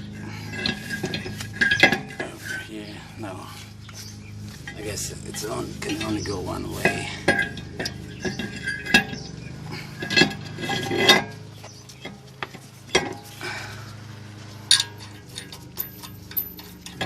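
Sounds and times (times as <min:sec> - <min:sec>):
metal parts clinking: 0:00.5 - 0:02.6, 0:04.7 - 0:09.2, 0:09.9 - 0:11.4, 0:14.6 - 0:17.0.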